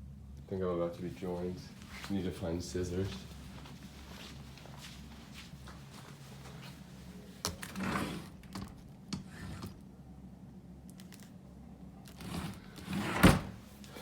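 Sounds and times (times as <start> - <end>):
rustling of items: 1.1 - 8.3.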